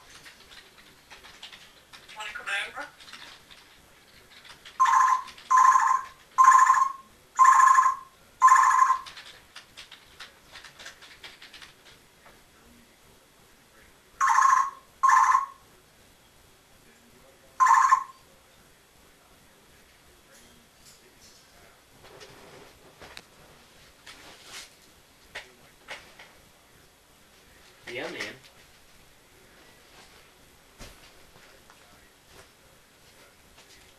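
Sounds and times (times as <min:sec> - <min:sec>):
parrot mimicking beeps: 0:04.8 - 0:09.1.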